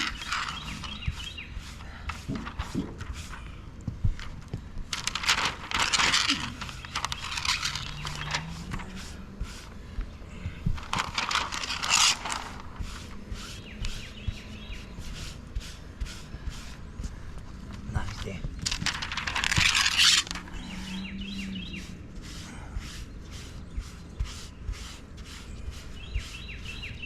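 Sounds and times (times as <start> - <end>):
rustling scraping roofing noise: 0.0 - 27.0.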